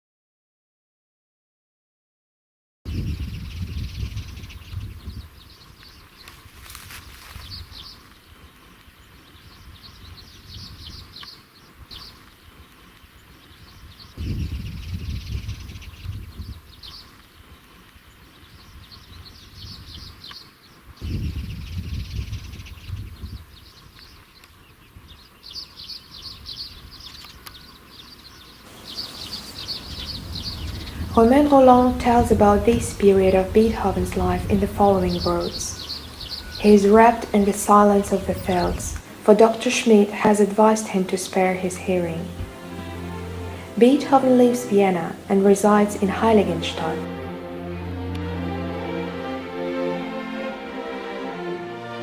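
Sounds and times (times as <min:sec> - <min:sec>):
small birds chirping: 0:02.9 - 0:49.1
faint low rumble: 0:29.7 - 0:48.7.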